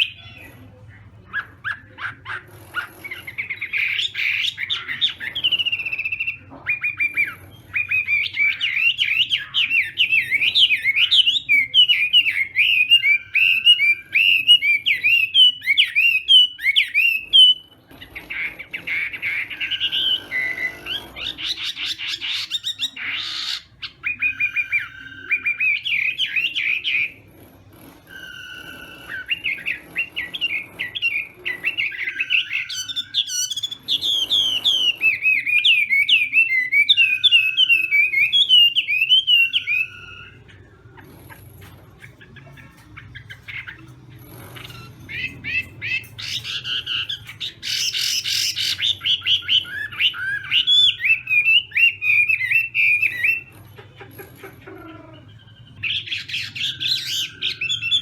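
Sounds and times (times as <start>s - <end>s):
songbird singing whistled notes: 44.6s - 53.5s.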